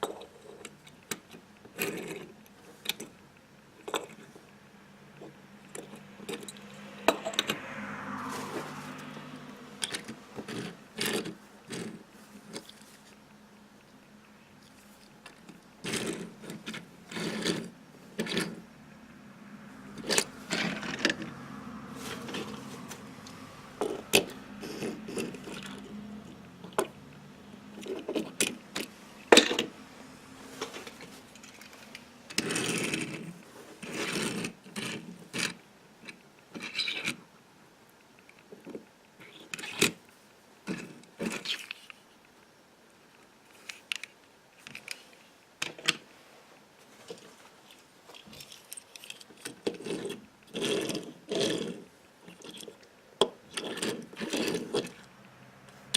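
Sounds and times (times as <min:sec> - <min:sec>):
toy cars clicking and knocking: 0:00.0 - 0:03.2, 0:03.8 - 0:04.4, 0:05.2 - 0:07.6, 0:08.9 - 0:12.8, 0:14.7 - 0:18.6, 0:19.9 - 0:21.3, 0:22.1 - 0:29.7, 0:30.7 - 0:37.2, 0:38.0 - 0:42.4, 0:43.1 - 0:46.0, 0:47.1 - 0:55.8
packaging rustling and scraping: 0:08.2 - 0:13.2, 0:19.9 - 0:26.0, 0:53.5 - 0:55.1.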